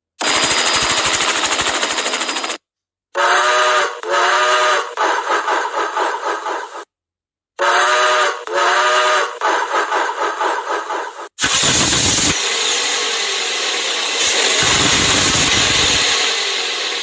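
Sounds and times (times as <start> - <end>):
steam whistle blasts: 3.2 - 5.0, 7.6 - 9.4, 11.5 - 17.0
loud hissing vehicle noise: 11.4 - 17.0.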